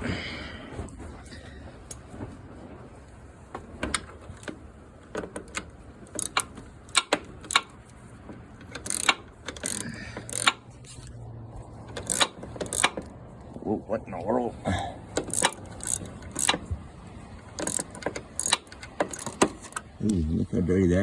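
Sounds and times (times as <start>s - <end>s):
ratchet wrench clicking: 3.8s - 8.0s, 8.6s - 10.8s, 11.8s - 13.2s, 15.1s - 16.7s, 17.4s - 19.9s.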